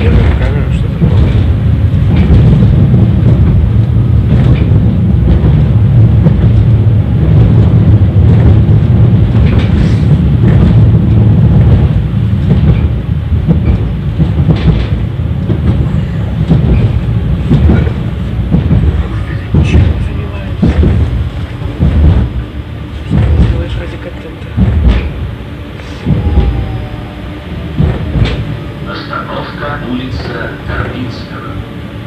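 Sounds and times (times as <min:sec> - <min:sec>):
tram running gear rumbling on rails: 0:00.0 - 0:32.0.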